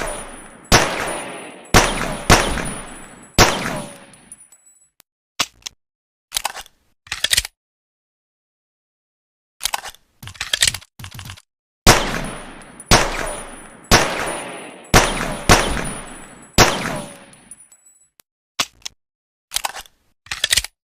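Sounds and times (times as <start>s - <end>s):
pistol shots with echo: 0.0s - 4.2s, 11.9s - 17.5s.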